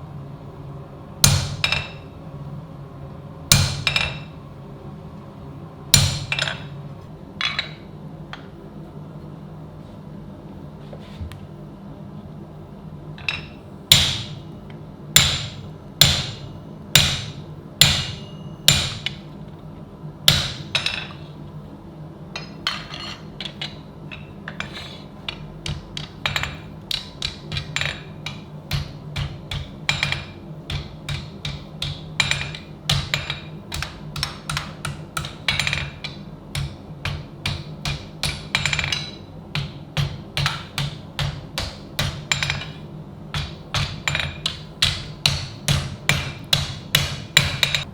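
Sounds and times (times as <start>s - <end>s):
hammer striking steel: 1.2s - 2.1s, 3.5s - 4.3s, 6.0s - 6.7s, 13.2s - 14.5s, 15.2s - 19.3s, 20.3s - 21.2s, 22.4s - 47.9s.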